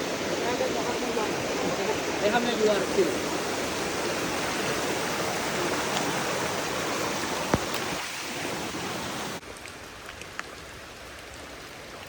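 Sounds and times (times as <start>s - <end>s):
rushing water: 0.0s - 12.0s.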